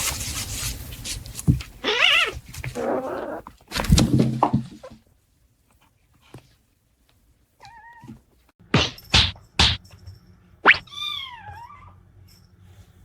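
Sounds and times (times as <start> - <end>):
rustling: 0.0 - 7.4
cat meowing: 1.8 - 3.5, 7.6 - 8.2, 10.7 - 12.0.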